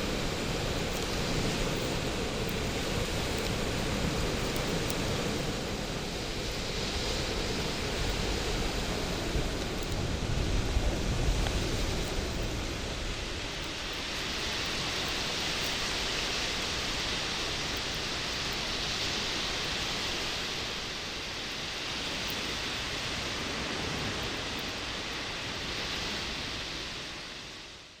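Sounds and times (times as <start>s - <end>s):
faint fire crackles: 0.0s - 28.0s.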